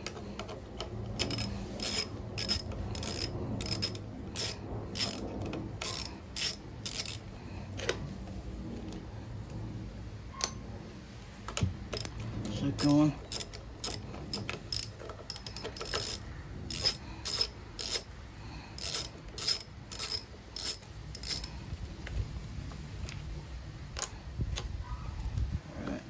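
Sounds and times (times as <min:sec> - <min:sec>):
socket ratchet clicking: 0:01.1 - 0:07.2, 0:12.8 - 0:18.1, 0:18.8 - 0:21.5.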